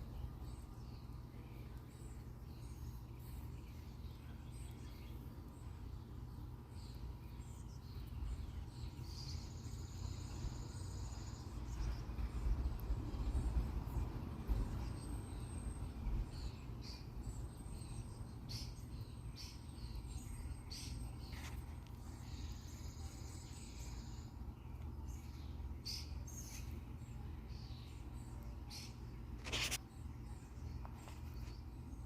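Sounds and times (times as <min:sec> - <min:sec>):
steady low rumble: 0:00.0 - 0:19.2.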